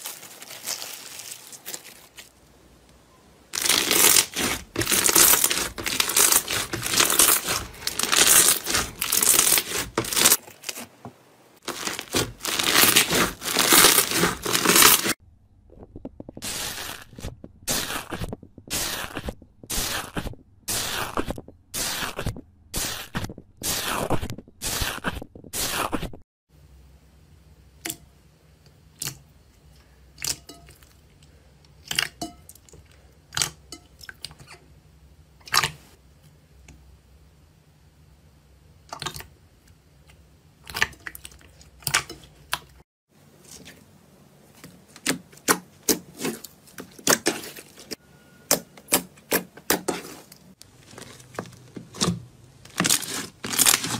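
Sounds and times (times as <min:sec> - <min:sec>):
slime squishing by hand: 0:03.5 - 0:11.0, 0:11.6 - 0:26.1, 0:44.5 - 0:53.9.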